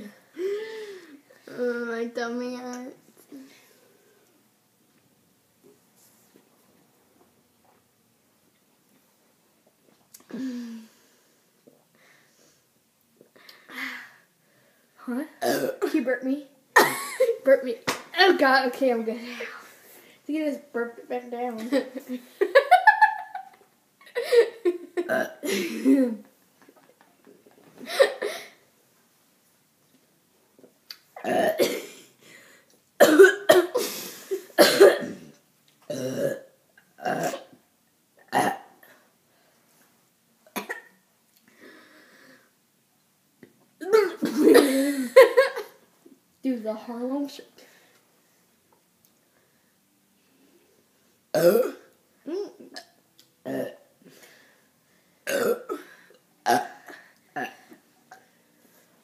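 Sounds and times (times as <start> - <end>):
girls burping and coughing: 15.4 - 16.0, 16.8 - 17.4, 24.2 - 26.2, 31.2 - 32.2, 33.0 - 33.9, 34.6 - 37.6, 38.3 - 38.8, 40.6 - 41.0, 43.8 - 45.8, 51.3 - 53.9, 55.2 - 58.2.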